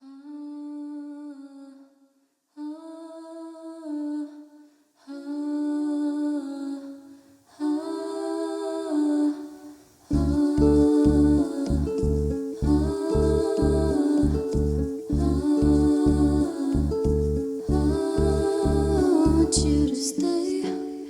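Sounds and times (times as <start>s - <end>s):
person humming a slow melody: 10.1s - 21.0s.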